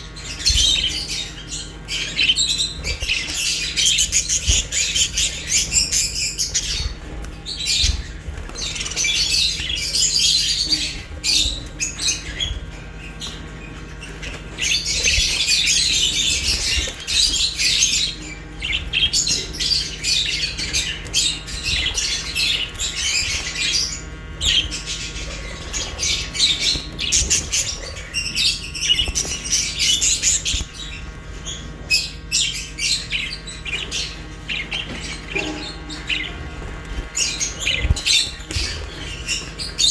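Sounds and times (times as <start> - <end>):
parrots chirping and squawking: 0.0 - 39.9.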